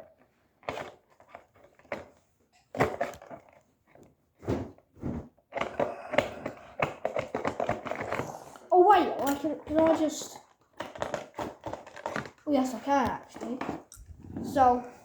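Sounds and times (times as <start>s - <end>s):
toy packaging crinkling: 9.8s - 12.7s.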